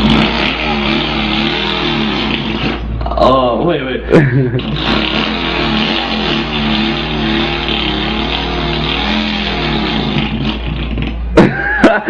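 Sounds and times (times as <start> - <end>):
boy imitating engine with voice: 0.0 - 3.4, 4.6 - 11.4.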